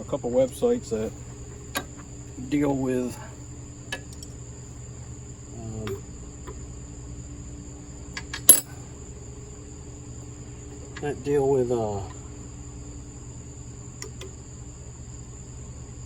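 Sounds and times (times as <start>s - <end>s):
crickets chirring: 0.0s - 16.0s
sharp metallic clink: 8.5s - 8.8s.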